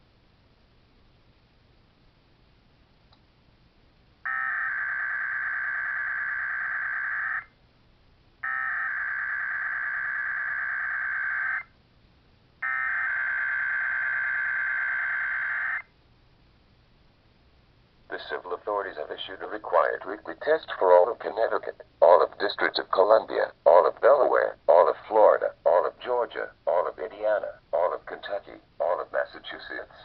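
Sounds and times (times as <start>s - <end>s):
buzzy digital data tones: 12.6s - 15.8s.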